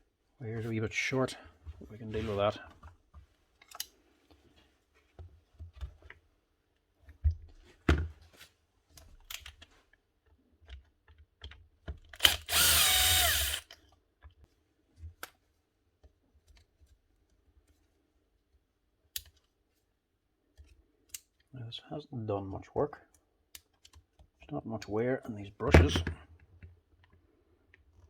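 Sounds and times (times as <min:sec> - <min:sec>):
small power tool whirring: 0:12.2 - 0:13.7.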